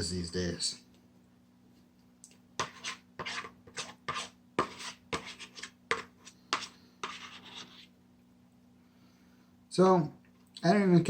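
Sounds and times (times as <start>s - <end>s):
fork scraping plastic tray: 2.6s - 7.9s.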